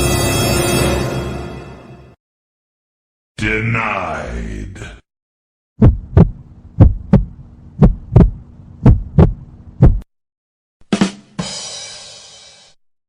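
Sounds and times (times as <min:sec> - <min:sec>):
steady hum: 0:05.8 - 0:10.0
heartbeat thumps: 0:05.8 - 0:10.1.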